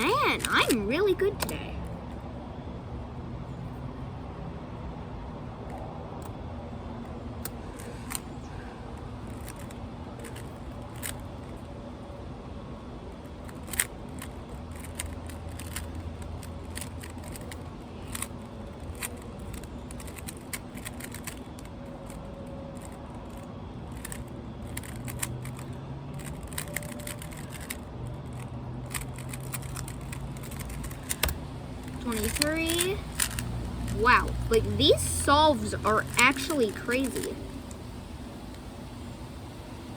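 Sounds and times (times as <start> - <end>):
wind: 0.0 - 39.9
puzzle cube plastic clicks: 0.1 - 2.0, 7.0 - 11.7, 13.2 - 37.8.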